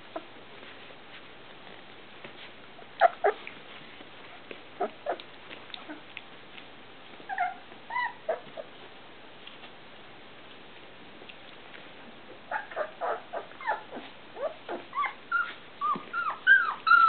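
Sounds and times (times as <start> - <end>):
puppies whimpering and squeaking: 3.0 - 3.5, 4.2 - 6.2, 7.2 - 8.8, 12.5 - 17.0.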